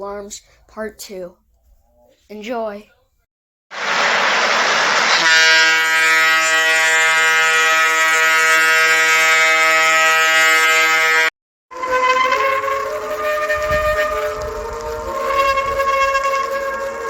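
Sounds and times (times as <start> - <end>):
burst of hiss: 3.7 - 7.1
buzzy horn-like alarm tone: 5.1 - 17.0.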